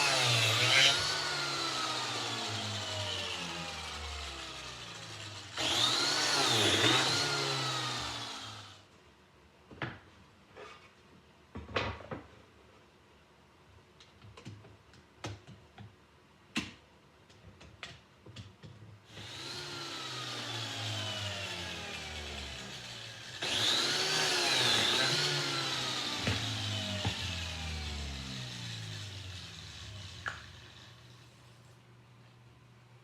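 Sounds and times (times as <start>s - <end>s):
biscuit joiner motor cutting: 0.0s - 8.8s, 19.1s - 31.2s.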